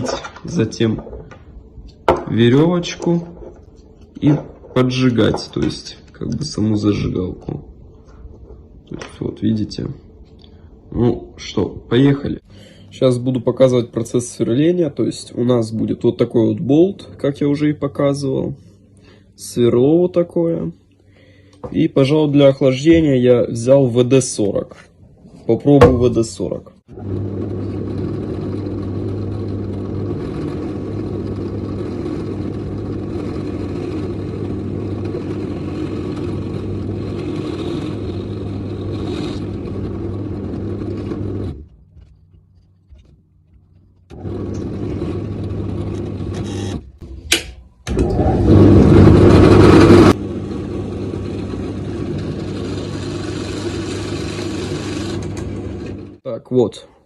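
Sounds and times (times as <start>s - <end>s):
electric drill drilling through bolt: 44.1s - 46.9s, 47.9s - 56.2s.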